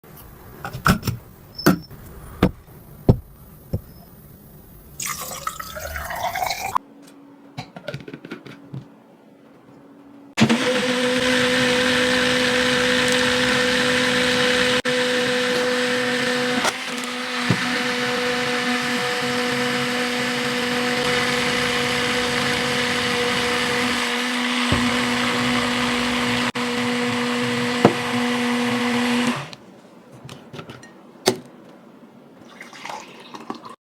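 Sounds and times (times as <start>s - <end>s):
blender motor humming: 10.4s - 29.6s.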